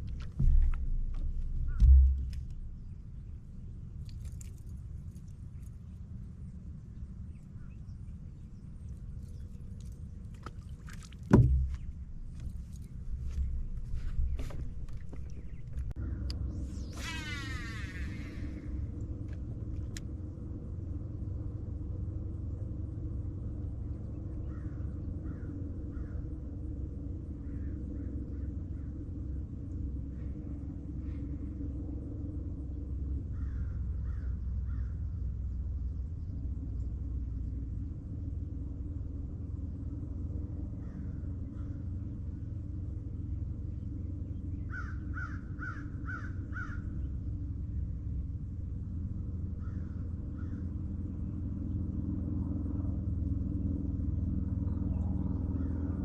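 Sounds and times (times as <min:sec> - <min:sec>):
boat motor rumbling: 0:00.0 - 0:56.0
faint bird calls: 0:23.8 - 0:31.6, 0:33.3 - 0:37.6, 0:40.7 - 0:48.0, 0:49.3 - 0:51.8, 0:54.5 - 0:56.0
bird harsh calls: 0:44.5 - 0:47.1.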